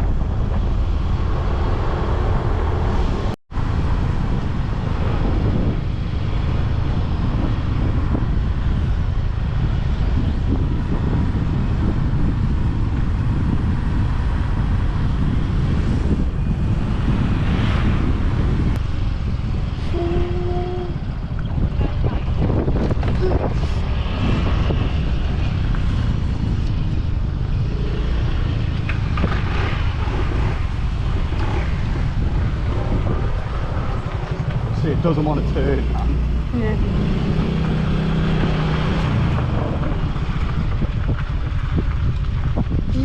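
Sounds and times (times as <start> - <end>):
motor vehicle running: 0.0 - 43.0
wind buffeting microphone: 0.0 - 43.0.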